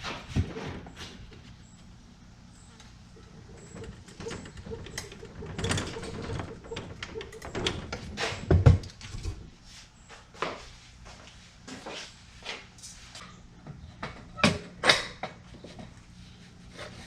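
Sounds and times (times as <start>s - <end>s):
objects knocking and clattering: 3.5s - 9.5s.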